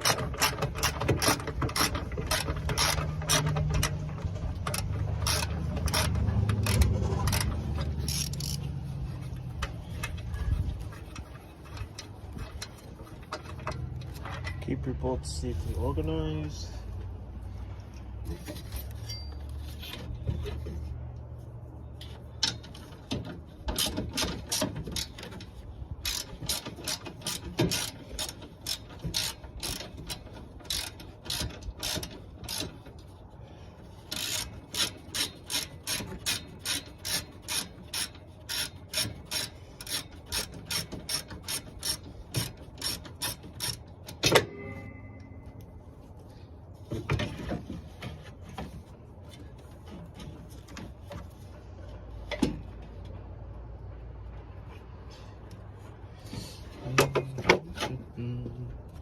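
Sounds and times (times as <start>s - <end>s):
ratchet wrench clicking: 0.0s - 10.3s, 23.7s - 33.0s, 34.0s - 44.4s.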